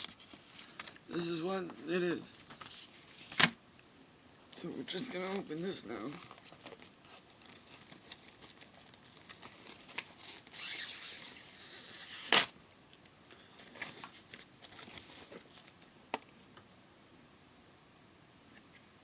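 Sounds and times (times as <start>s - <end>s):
packaging clicks and rustles: 5.0s - 16.3s
packaging tearing: 5.2s - 13.0s, 13.6s - 15.8s.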